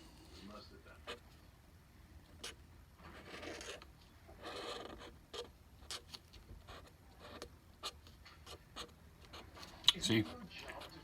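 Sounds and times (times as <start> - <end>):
pen scratching on paper: 2.4 - 11.0.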